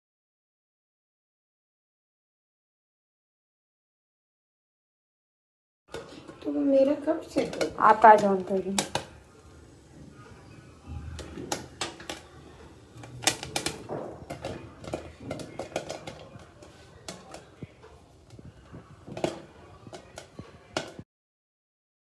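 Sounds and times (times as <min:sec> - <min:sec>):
popcorn popping: 0:05.9 - 0:21.0.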